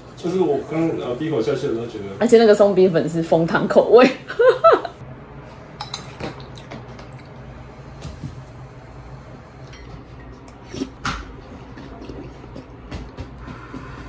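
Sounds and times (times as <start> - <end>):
utensils clinking against dishes: 5.8 - 7.4, 9.6 - 11.0.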